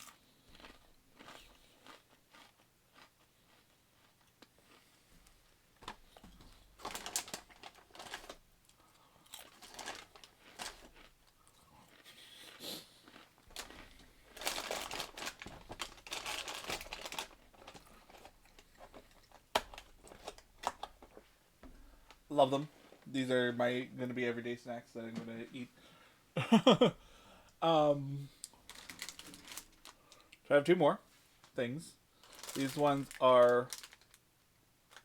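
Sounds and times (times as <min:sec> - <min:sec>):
person chewing crunchy crackers: 0:00.0 - 0:21.2, 0:28.4 - 0:30.4.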